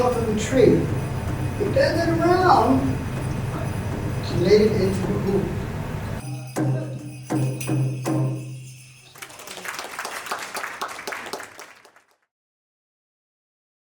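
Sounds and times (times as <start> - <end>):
rapid jingling and rattling: 0.0 - 9.6
drum strikes: 6.2 - 8.8.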